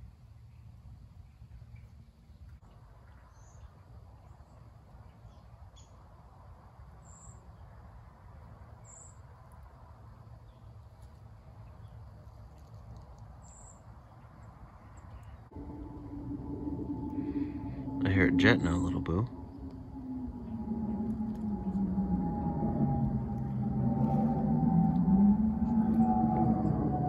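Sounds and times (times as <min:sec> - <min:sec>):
low outdoor rush: 0:07.6 - 0:27.0.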